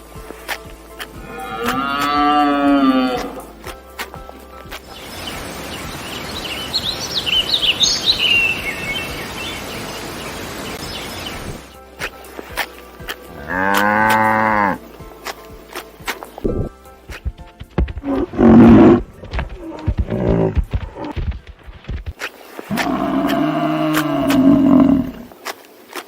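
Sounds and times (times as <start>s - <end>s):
cow mooing: 1.2s - 3.4s, 13.4s - 14.8s, 22.7s - 25.3s
birds chirping: 4.3s - 25.3s.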